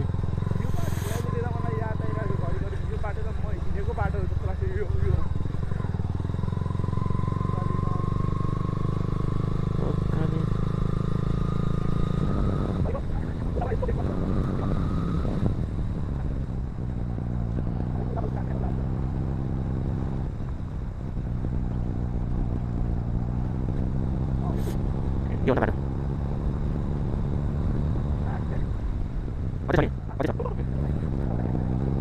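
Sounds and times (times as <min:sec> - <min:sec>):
motorcycle engine running: 0:00.0 - 0:32.0
thin high whine: 0:00.5 - 0:02.9.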